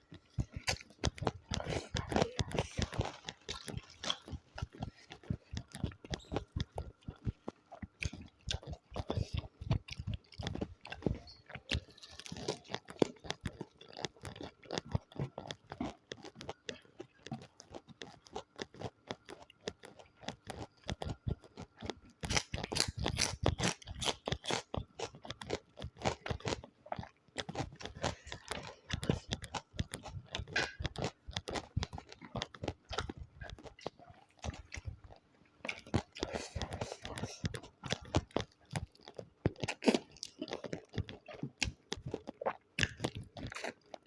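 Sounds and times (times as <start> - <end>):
person chewing and crunching food: 0.0 - 44.0.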